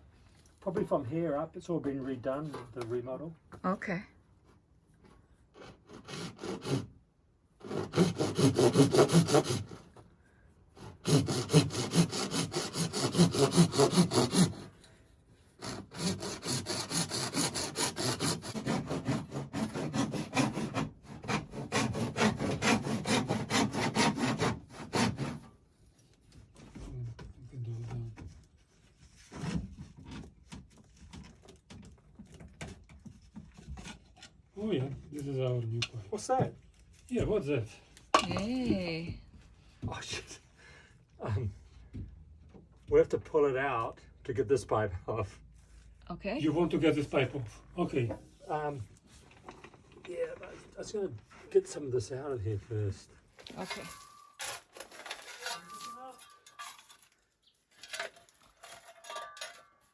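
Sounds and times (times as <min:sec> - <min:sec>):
hand saw cutting pipe: 0:05.5 - 0:07.0, 0:07.6 - 0:10.0, 0:10.8 - 0:14.9, 0:15.5 - 0:25.6, 0:53.4 - 0:59.9.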